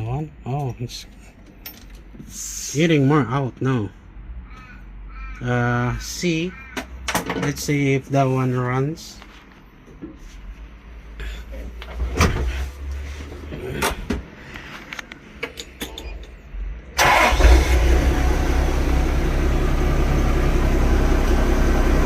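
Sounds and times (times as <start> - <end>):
forklift engine running: 17.0 - 22.0.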